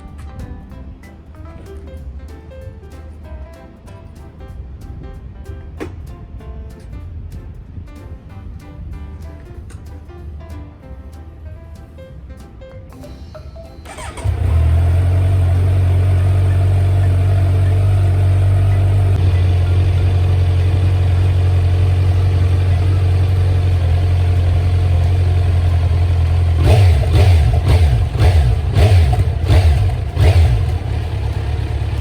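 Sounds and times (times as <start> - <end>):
motorcycle engine starting and idling: 13.8 - 32.0.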